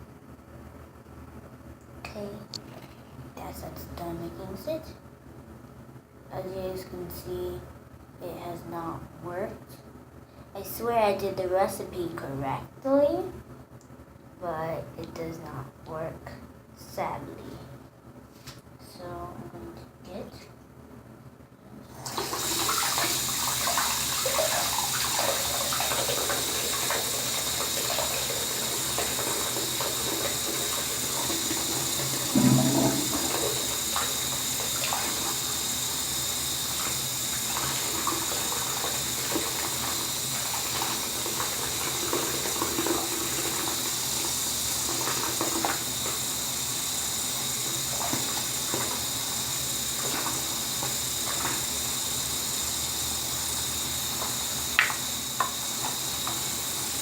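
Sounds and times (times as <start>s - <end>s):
water running from tap: 22.0s - 57.0s.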